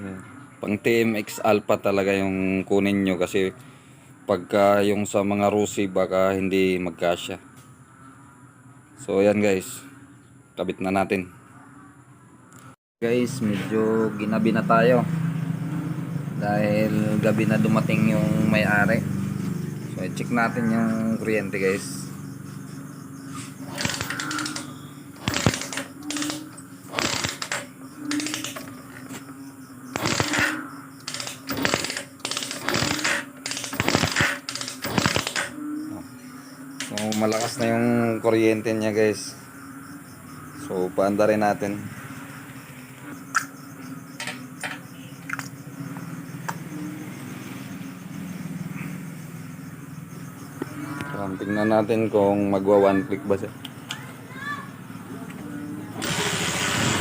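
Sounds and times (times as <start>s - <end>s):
small engine humming: 14.0s - 37.9s, 54.3s - 57.0s
motorcycle kick-starter clicks: 23.6s - 29.3s, 29.9s - 35.6s, 36.8s - 37.6s.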